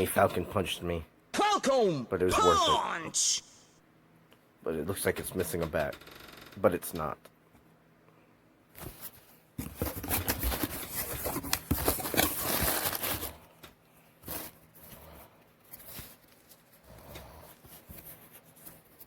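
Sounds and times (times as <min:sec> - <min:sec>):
rustles and clicks of handling: 0:08.7 - 0:19.0
packaging crinkling and tearing: 0:09.8 - 0:13.5.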